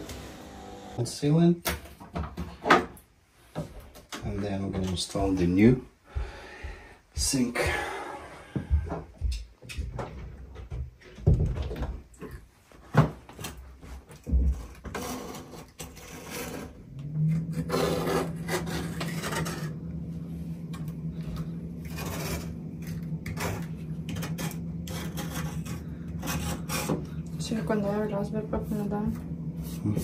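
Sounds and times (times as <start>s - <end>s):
steady low hum: 4.2s - 10.7s, 16.5s - 30.0s
hand scraping and rubbing: 13.8s - 27.3s, 28.6s - 30.0s.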